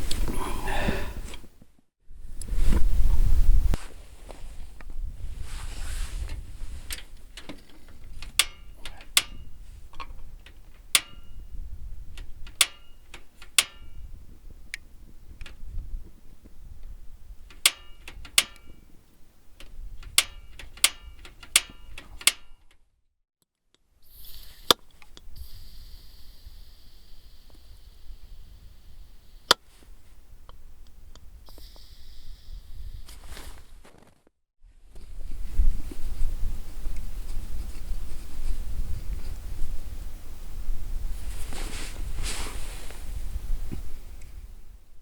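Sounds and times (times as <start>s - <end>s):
metal cooking gear clinking: 6.8s - 9.6s, 10.3s - 11.5s, 12.2s - 14.0s, 17.5s - 18.8s, 20.0s - 22.8s.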